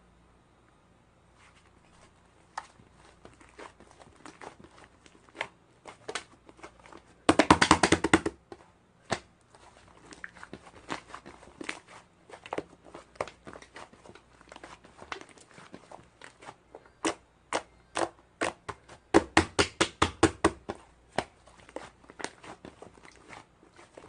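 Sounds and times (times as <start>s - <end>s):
crinkly material rustling: 1.3s - 7.3s, 8.4s - 17.8s, 20.6s - 24.0s.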